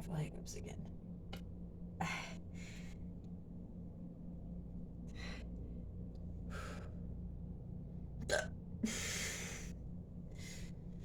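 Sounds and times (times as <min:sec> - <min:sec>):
woman breathing: 0:06.4 - 0:07.1, 0:08.8 - 0:10.8.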